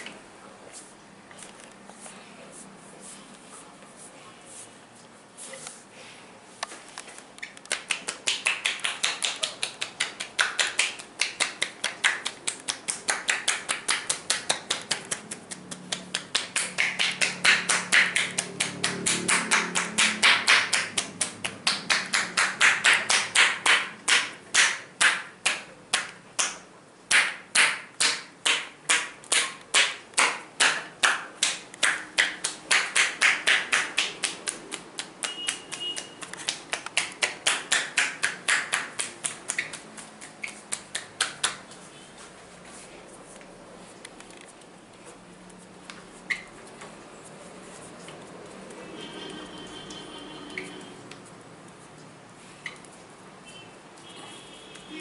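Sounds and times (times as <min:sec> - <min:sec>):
hand strikes of back massage: 0:07.7 - 0:41.8.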